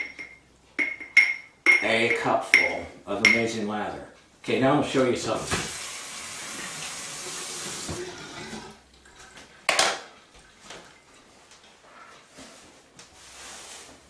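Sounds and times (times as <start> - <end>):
running water: 5.3 - 11.4.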